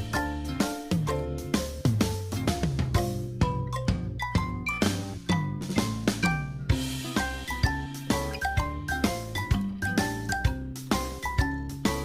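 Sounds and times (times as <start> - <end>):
cheerful tune with bell-like notes: 0.0 - 12.0
steady drum beat: 0.0 - 12.0.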